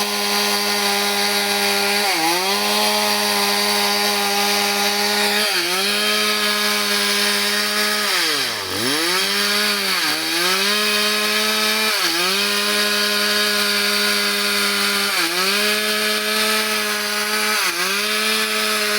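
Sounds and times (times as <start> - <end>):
chainsaw running at high revs: 0.0 - 18.9.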